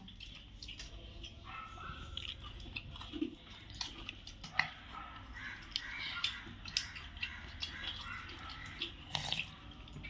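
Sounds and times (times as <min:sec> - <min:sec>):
chewing: 0:00.0 - 0:10.0.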